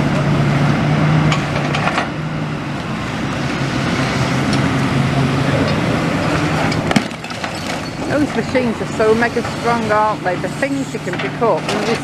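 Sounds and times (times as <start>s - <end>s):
excavator engine running: 0.0s - 12.0s
rubble clattering: 6.8s - 8.6s.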